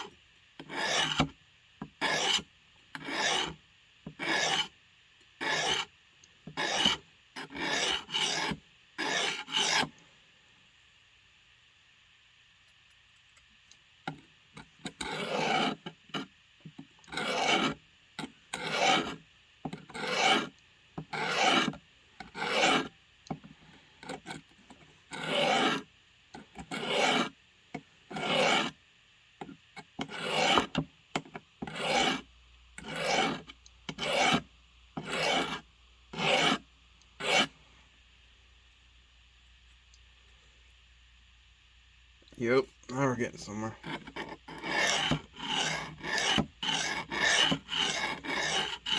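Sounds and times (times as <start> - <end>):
steel scraping on abrasive: 0.7 - 1.2, 2.0 - 2.4, 3.0 - 3.5, 4.2 - 4.7, 6.6 - 9.9, 17.2 - 17.8, 18.6 - 19.2, 20.0 - 20.5, 22.4 - 22.9, 26.7 - 27.3, 28.2 - 28.7, 30.1 - 30.7, 32.8 - 33.4, 35.0 - 35.6, 36.2 - 36.6, 37.2 - 37.5, 43.8 - 48.9.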